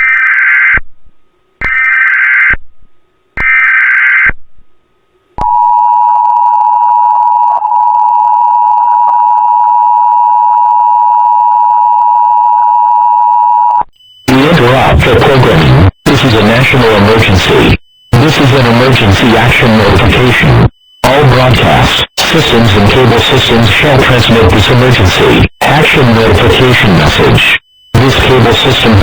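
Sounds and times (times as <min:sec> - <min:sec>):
two-tone attention signal: 0:05.4 - 0:29.0
warbling digital data bursts: 0:14.0 - 0:29.0.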